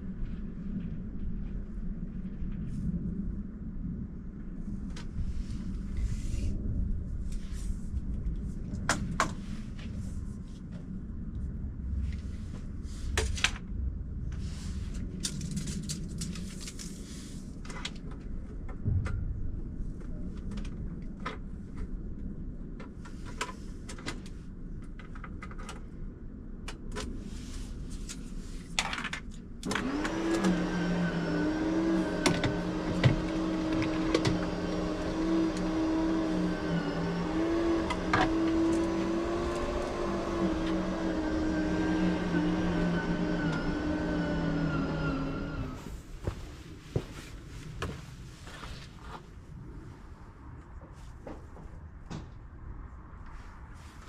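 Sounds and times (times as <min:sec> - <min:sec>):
low rumble: 0:00.0 - 0:30.2
small motor running: 0:29.7 - 0:45.8.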